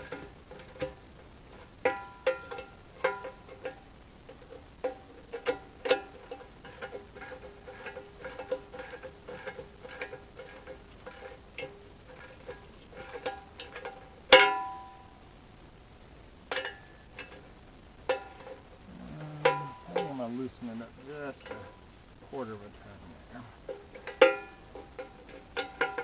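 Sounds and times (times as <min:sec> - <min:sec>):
wrench clinking on metal: 0:04.4 - 0:15.1, 0:23.7 - 0:26.0
loud metal clank ringing: 0:14.4 - 0:15.1.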